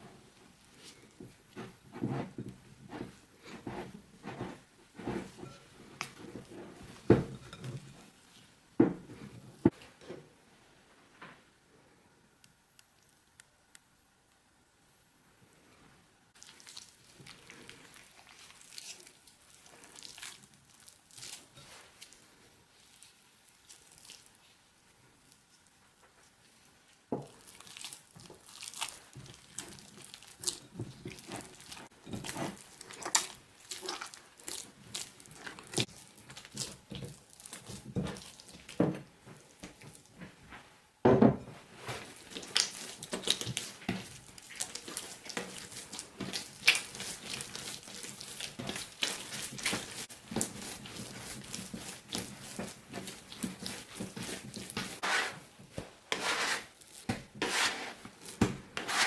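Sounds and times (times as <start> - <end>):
dough being kneaded by hand: 0.0 - 10.3, 16.3 - 59.0
dough thump: 41.0 - 41.6.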